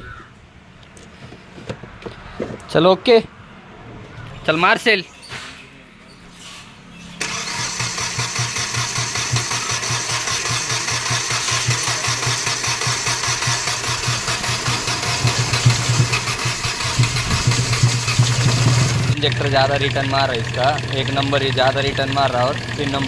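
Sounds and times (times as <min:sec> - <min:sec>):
diesel engine starting and running: 0:06.9 - 0:23.0.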